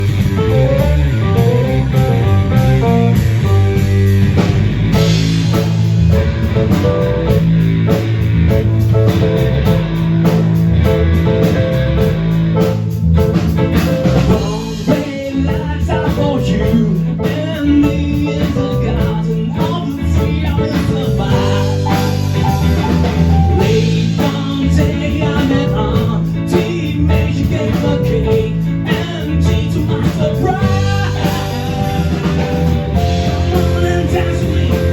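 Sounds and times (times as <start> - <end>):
drum kit: 0.0 - 34.9
electric guitar: 0.0 - 34.9
person singing: 13.6 - 34.9.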